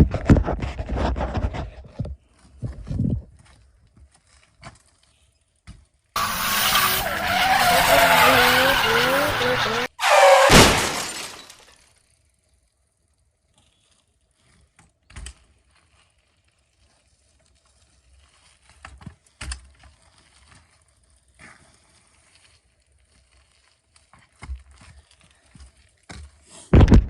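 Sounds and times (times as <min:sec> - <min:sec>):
loud rush: 0:06.2 - 0:11.6.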